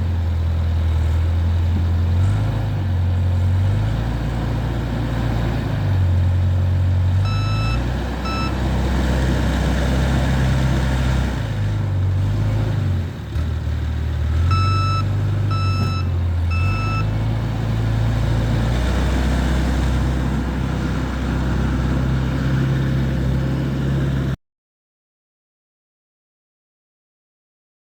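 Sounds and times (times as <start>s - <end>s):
diesel engine running under load: 0.0s - 24.4s
reversing alarm beeps: 7.2s - 8.6s, 14.5s - 17.1s.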